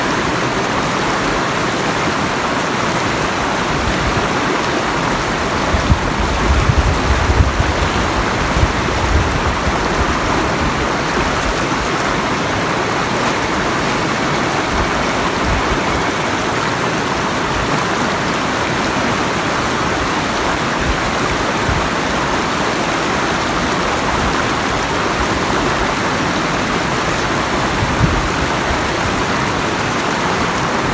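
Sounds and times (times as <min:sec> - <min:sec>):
river water rushing: 0:00.0 - 0:30.9
low bumps: 0:05.6 - 0:11.6.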